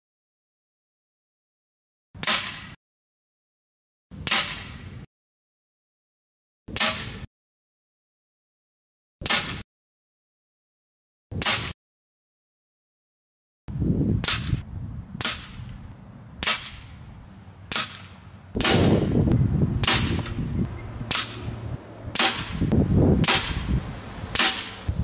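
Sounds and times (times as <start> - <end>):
air rifle shots: 2.2 - 2.8, 15.2 - 15.6, 16.4 - 16.9, 17.7 - 19.2, 19.8 - 20.4, 21.1 - 24.9
low rumble: 18.5 - 24.3.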